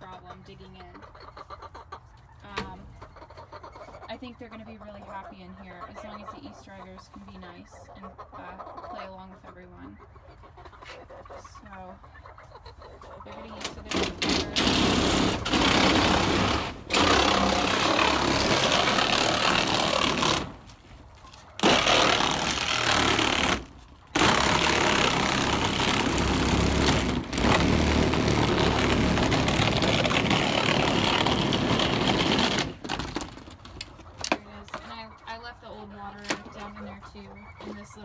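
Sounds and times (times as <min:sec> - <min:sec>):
power tool running: 0:13.9 - 0:20.6, 0:21.6 - 0:32.9.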